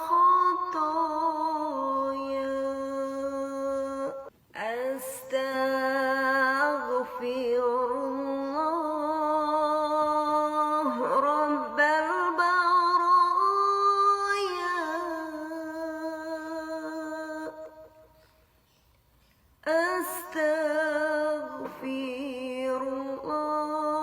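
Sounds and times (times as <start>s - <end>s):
person singing a slow chant: 0.0s - 18.4s, 19.6s - 24.0s.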